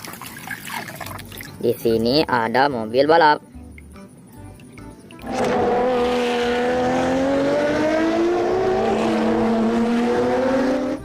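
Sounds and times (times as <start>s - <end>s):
race car engine: 5.2s - 11.0s.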